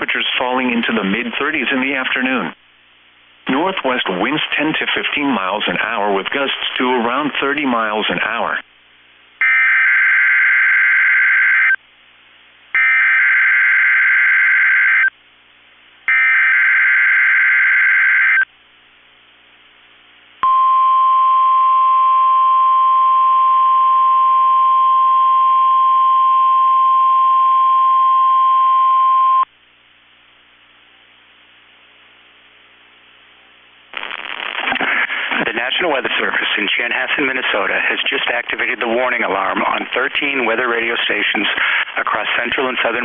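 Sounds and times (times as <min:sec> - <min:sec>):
steady alarm tone: 0:09.4 - 0:11.8, 0:12.8 - 0:15.1, 0:16.1 - 0:18.5.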